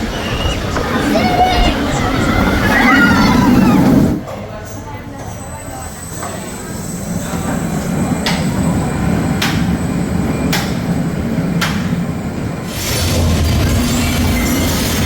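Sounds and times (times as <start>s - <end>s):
hissing rush: 0.0s - 4.2s, 12.6s - 15.0s
roller coaster train rumbling on track: 0.0s - 15.0s.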